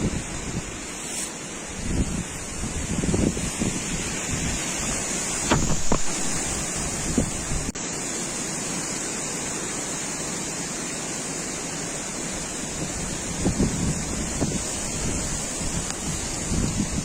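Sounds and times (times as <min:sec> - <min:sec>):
wind buffeting microphone: 0:00.0 - 0:00.9, 0:01.6 - 0:07.8, 0:12.8 - 0:17.0.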